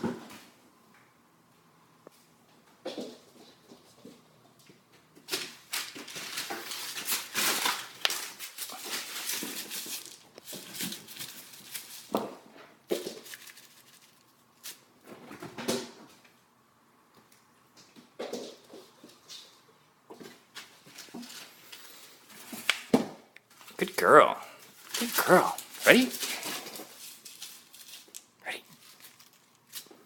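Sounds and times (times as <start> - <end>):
cats scrabbling on floor: 2.6 - 16.3, 17.2 - 23.8.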